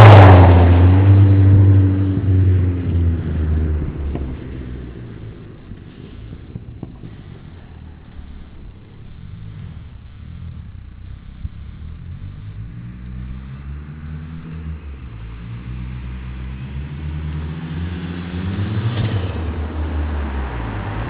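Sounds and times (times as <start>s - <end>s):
car engine revving under load: 0.0s - 21.0s
wind and road noise: 0.0s - 21.0s.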